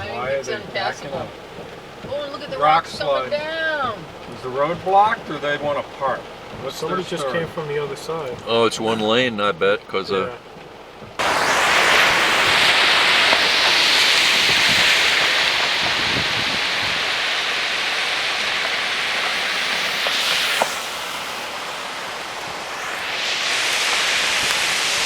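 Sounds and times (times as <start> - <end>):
heavy rain and running water: 0.0 - 25.0.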